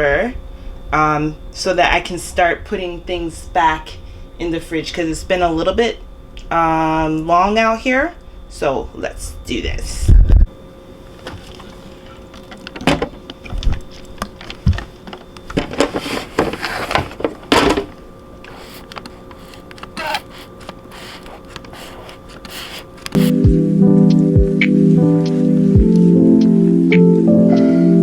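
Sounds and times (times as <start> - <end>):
scrubbing a shelf by hand: 18.5 - 23.4.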